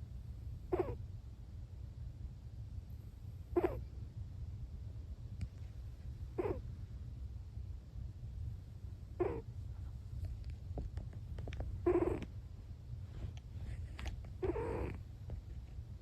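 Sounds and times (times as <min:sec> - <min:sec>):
steady low hum: 0:00.0 - 0:16.0
cat snoring: 0:00.7 - 0:01.0, 0:03.5 - 0:03.8, 0:06.4 - 0:06.6, 0:09.2 - 0:09.5, 0:11.8 - 0:12.2, 0:14.4 - 0:15.0.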